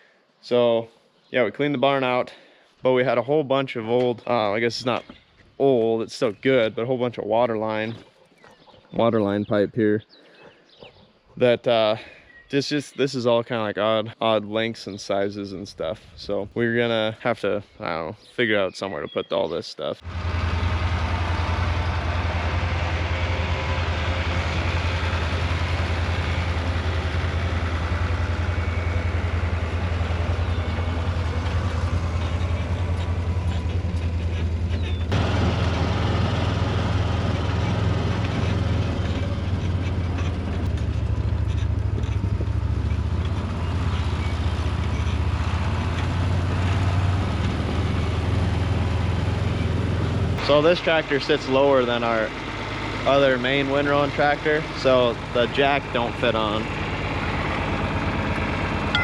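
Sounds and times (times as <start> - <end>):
tractor engine idling: 20.0 - 59.0.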